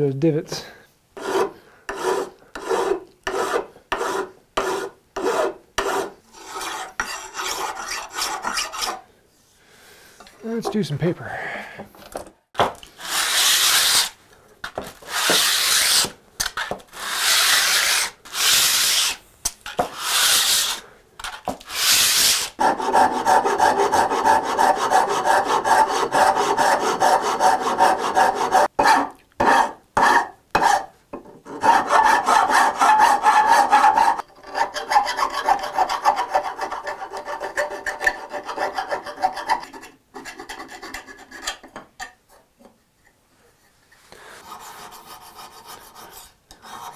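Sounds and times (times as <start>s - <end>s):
sandpaper scrubbing on wood: 13.0s - 14.1s, 15.1s - 16.1s, 17.0s - 19.2s, 19.9s - 20.8s, 21.7s - 28.7s.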